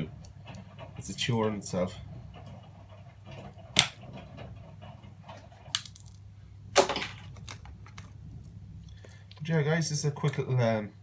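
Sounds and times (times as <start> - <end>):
small metal and plastic parts clinking: 5.3 - 6.2, 6.8 - 9.2.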